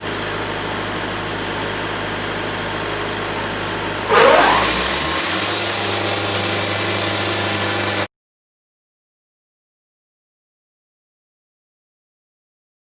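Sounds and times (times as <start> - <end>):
sawmill engine running: 0.1 - 8.1
loud high hiss: 4.1 - 8.1
rising whine: 4.1 - 8.1.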